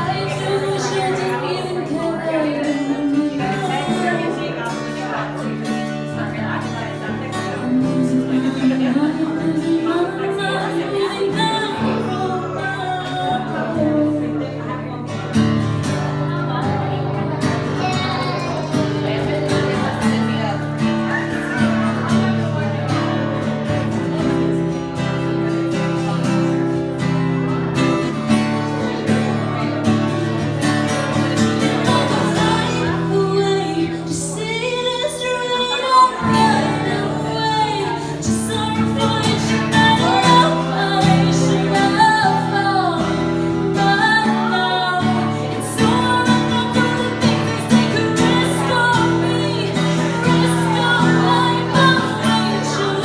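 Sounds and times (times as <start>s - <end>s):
woman singing: 0.0s - 4.8s, 7.3s - 14.5s, 31.6s - 53.0s
strummed acoustic guitar: 0.0s - 53.0s.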